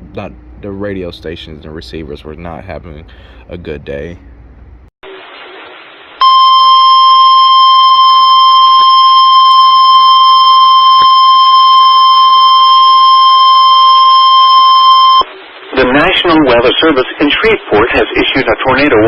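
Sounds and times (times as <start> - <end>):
alarm tone: 6.2 - 15.3
radio static: 14.3 - 19.0.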